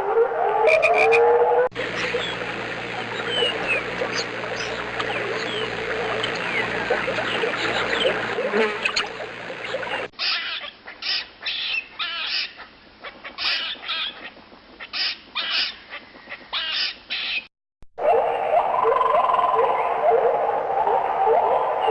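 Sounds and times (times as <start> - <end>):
forest bird chorus: 1.7 - 10.1.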